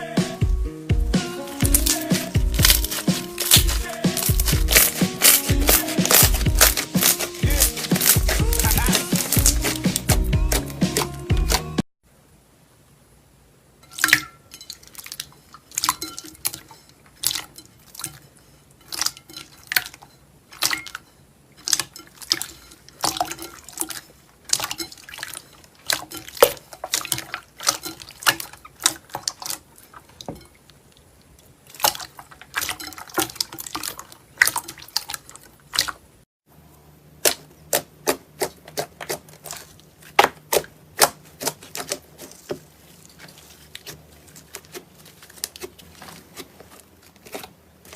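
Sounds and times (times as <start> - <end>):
slime clicking and popping: 1.6 - 11.6.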